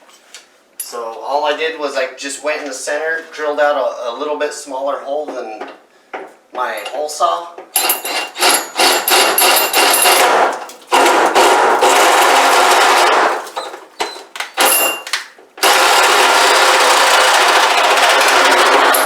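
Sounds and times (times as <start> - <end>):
electric drill cutting sheet metal: 7.8 - 19.0
rapid rattling and chattering: 8.0 - 13.9, 15.6 - 19.0.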